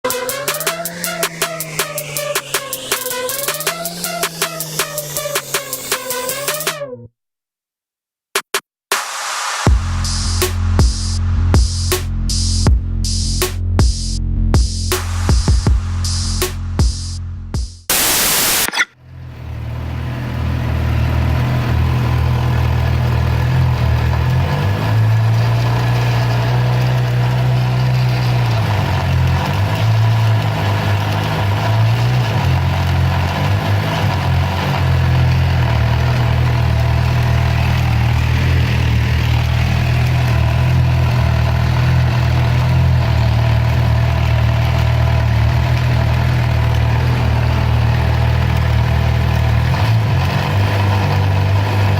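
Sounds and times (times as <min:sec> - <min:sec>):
motorcycle engine idling: 0:25.1 - 0:50.1.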